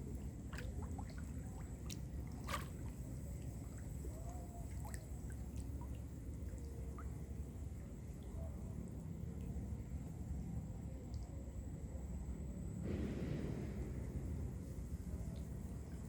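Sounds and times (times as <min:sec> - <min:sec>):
low steady rumble: 0:00.0 - 0:16.0
water dripping and trickling: 0:00.1 - 0:09.6.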